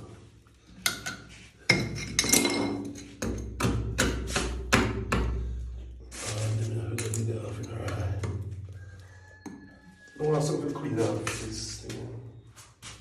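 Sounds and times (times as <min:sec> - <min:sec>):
hard objects knocking and clinking: 0:00.7 - 0:09.8.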